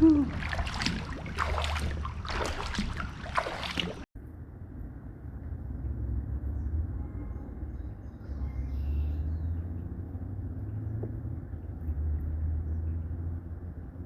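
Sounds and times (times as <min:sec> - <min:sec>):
paddle splashing in water: 0:00.0 - 0:04.1
distant road traffic rumble: 0:00.0 - 0:14.0.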